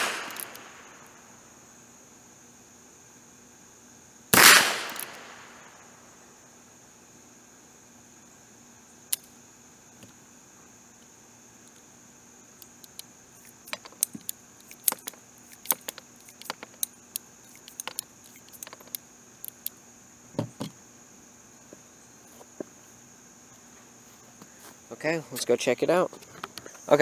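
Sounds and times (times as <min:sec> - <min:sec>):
crickets chirping: 0:00.0 - 0:27.0
metallic clicks of revolver handling: 0:00.1 - 0:00.7, 0:04.4 - 0:05.2, 0:12.6 - 0:19.8.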